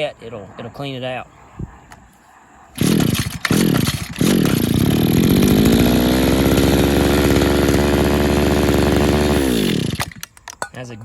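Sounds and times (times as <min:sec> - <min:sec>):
small two-stroke engine running: 0:02.8 - 0:10.3.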